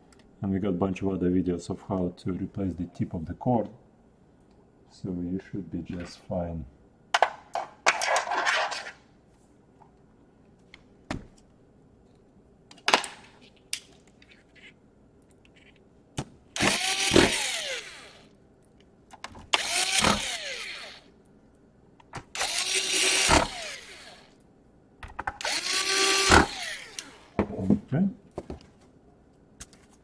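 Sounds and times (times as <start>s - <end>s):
electric screwdriver whining: 16.6s - 18.3s, 19.5s - 21.1s, 22.3s - 24.3s, 25.4s - 27.4s.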